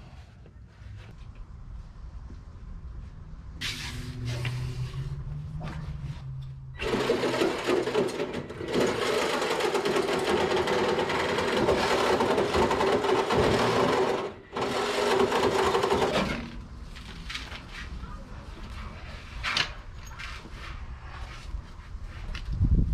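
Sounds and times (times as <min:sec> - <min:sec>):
power saw cutting sheet metal: 0:06.8 - 0:16.6.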